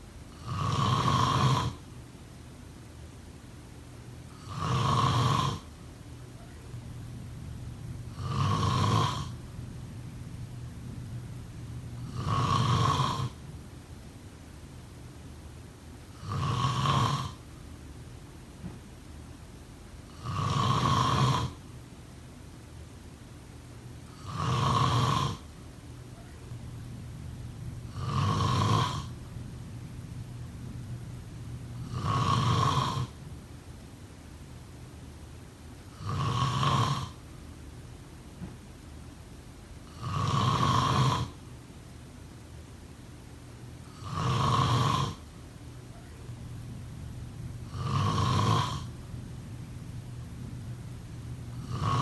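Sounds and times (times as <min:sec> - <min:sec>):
person snoring: 0:00.3 - 0:01.8, 0:04.3 - 0:05.7, 0:08.0 - 0:09.5, 0:11.9 - 0:13.4, 0:16.2 - 0:17.4, 0:20.1 - 0:21.6, 0:24.2 - 0:25.5, 0:27.8 - 0:29.3, 0:31.0 - 0:33.2, 0:35.9 - 0:37.2, 0:39.8 - 0:41.4, 0:44.0 - 0:45.2, 0:47.6 - 0:49.1, 0:51.4 - 0:52.0.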